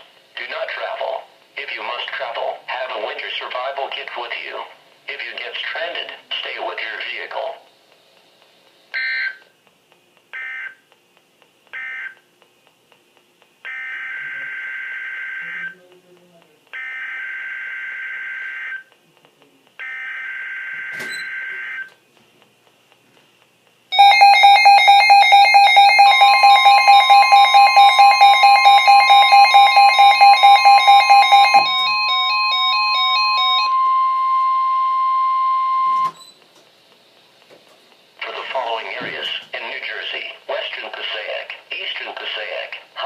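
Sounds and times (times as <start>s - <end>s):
steady warning tone: 13.7s - 16.0s, 23.9s - 36.4s
pulsing electronic alarm beep: 19.8s - 21.9s, 24.0s - 36.3s.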